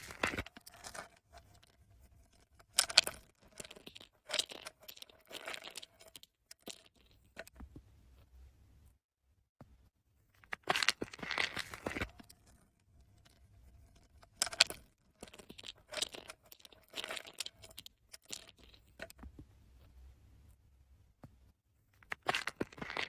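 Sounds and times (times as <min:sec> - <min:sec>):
crinkling pill packaging: 0:00.0 - 0:01.8, 0:02.6 - 0:07.3, 0:10.4 - 0:12.6, 0:14.2 - 0:19.1, 0:22.0 - 0:23.0.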